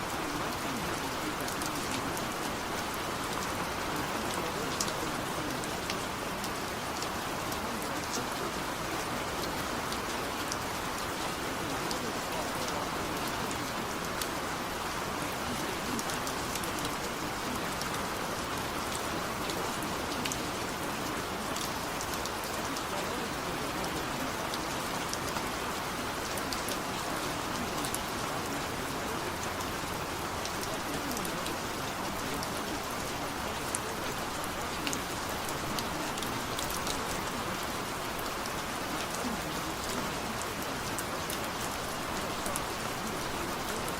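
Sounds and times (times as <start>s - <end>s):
steady rain falling: 0.0s - 43.9s.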